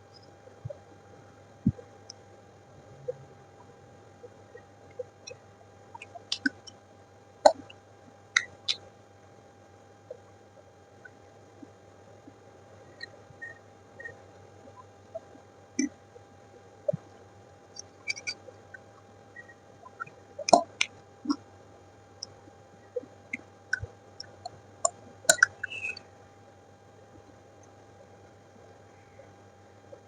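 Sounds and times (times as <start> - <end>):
wet mouth clicks and chewing: 6.0 - 6.8, 17.8 - 18.8, 19.9 - 21.4, 25.3 - 26.0.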